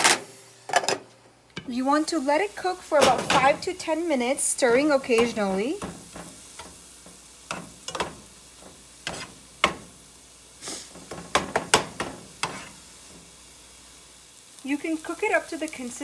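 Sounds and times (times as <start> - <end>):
frying hiss: 0.0 - 16.0
spoon scraping a pan: 1.6 - 13.4.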